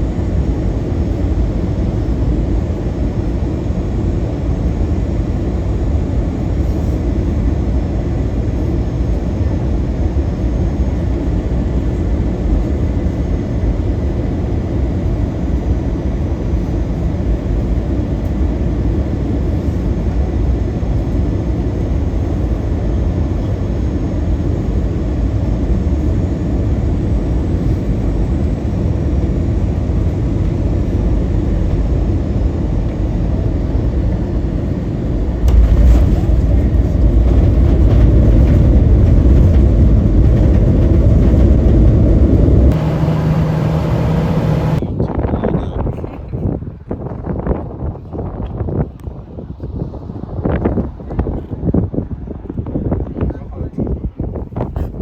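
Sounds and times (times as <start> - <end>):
vehicle interior rumble: 27.4 - 44.8.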